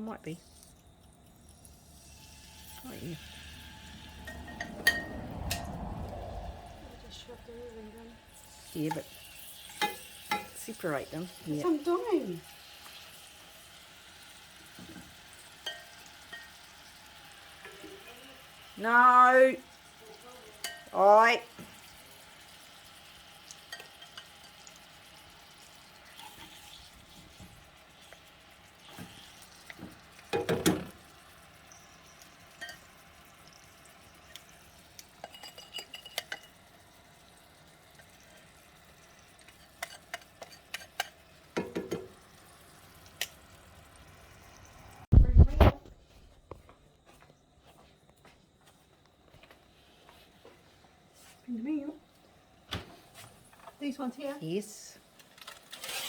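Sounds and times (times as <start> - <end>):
chicken sizzling in a frying pan: 0.2 - 45.1, 51.2 - 56.0
utensils clattering against pan: 4.2 - 5.7, 8.4 - 10.8, 14.8 - 16.6, 23.6 - 24.8, 28.9 - 31.0, 35.1 - 36.6, 39.4 - 42.2.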